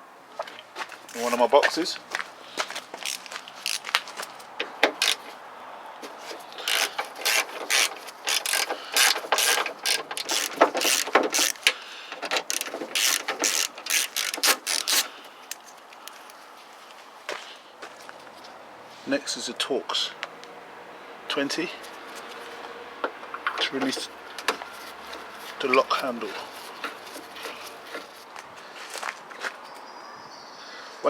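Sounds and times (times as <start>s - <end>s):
hand ratchet clicking: 4.9s - 5.3s, 6.6s - 16.2s.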